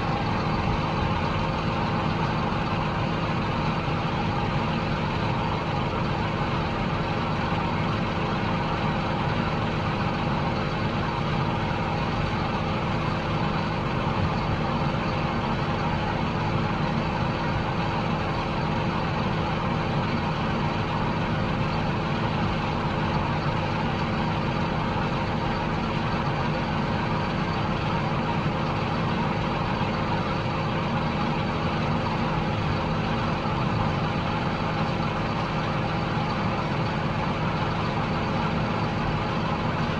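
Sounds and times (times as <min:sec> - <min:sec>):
diesel machinery droning: 0:00.0 - 0:39.9.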